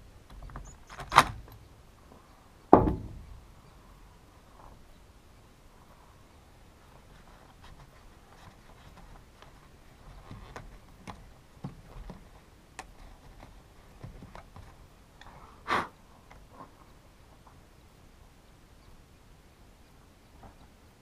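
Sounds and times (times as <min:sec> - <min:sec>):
short puff of noise: 0:15.4 - 0:16.0.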